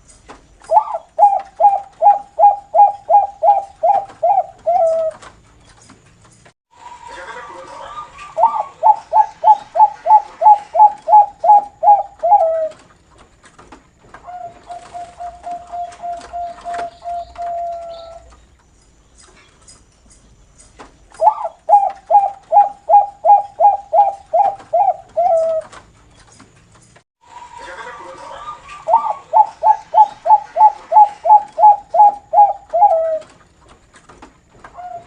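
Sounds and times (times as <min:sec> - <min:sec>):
dove cooing song: 0:00.6 - 0:05.3, 0:08.1 - 0:12.9, 0:14.2 - 0:18.4, 0:21.2 - 0:25.8, 0:28.3 - 0:33.4, 0:34.7 - 0:35.0.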